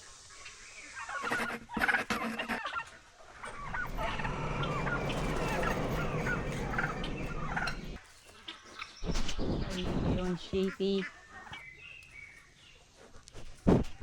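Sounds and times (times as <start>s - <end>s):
poultry calling: 0.4s - 11.8s
clattering: 3.4s - 8.2s.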